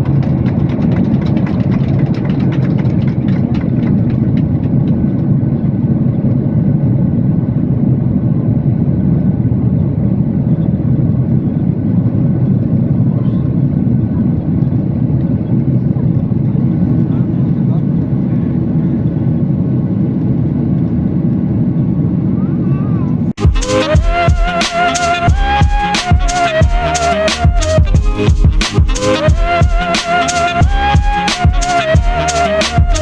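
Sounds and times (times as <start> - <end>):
jet engine and airflow in cabin: 0.0 - 23.4.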